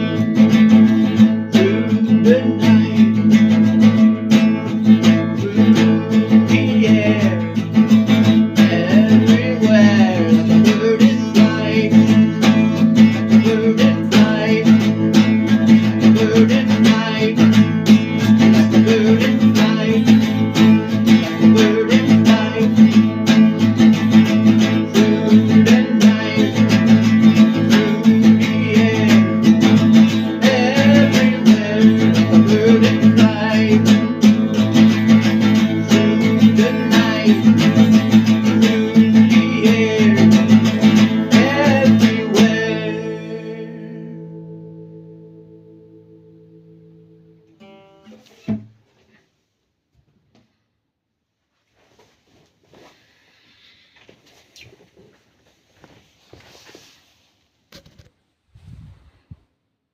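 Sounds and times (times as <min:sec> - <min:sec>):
acoustic guitar strumming: 0:00.0 - 0:48.9.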